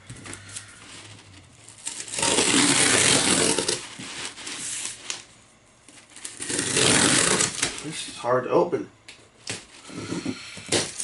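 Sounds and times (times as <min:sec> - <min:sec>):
cardboard tearing: 0:00.9 - 0:05.2, 0:06.1 - 0:07.8.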